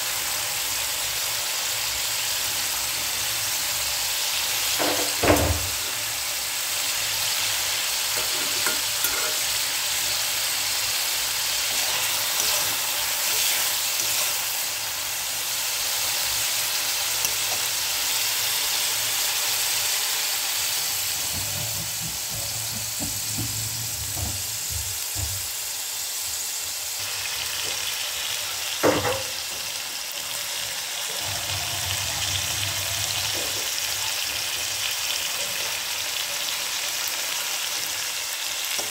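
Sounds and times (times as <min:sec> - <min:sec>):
food sizzling in oil: 0:00.0 - 0:38.9
stirring scraping pan: 0:08.1 - 0:09.7, 0:11.4 - 0:14.8
utensil knocking against pan: 0:21.3 - 0:25.4.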